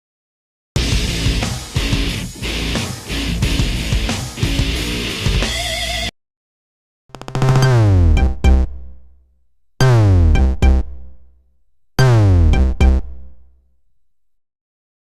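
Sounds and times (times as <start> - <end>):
drum-machine hits: 0.8 - 5.6, 7.2 - 9.0, 9.8 - 11.3, 12.0 - 13.4.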